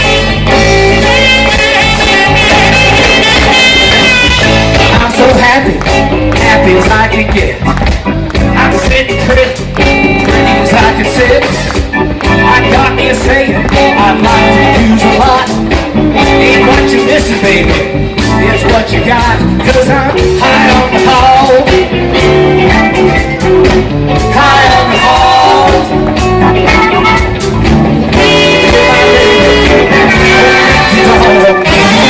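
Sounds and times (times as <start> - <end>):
blues-rock band playing: 0.0 - 32.0
person singing: 8.4 - 23.1, 24.2 - 26.2, 28.1 - 32.0.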